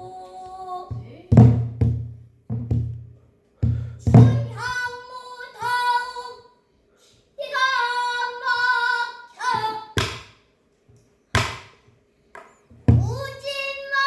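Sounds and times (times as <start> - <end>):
child singing held wavering phrases: 0.0 - 1.5, 4.0 - 10.1, 12.9 - 14.0
drum strokes: 0.0 - 4.7, 12.7 - 13.5.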